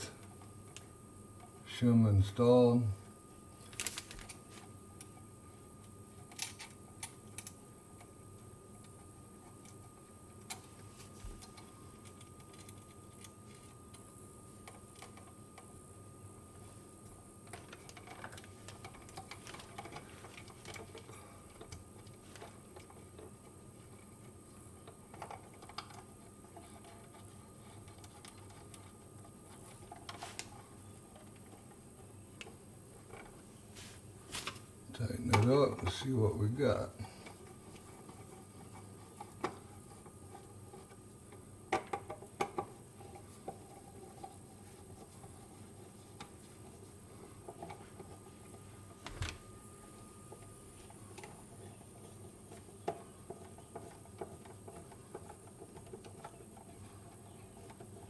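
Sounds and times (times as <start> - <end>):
faint steady hum: 0.0 - 58.0
small parts clicking: 6.3 - 7.6.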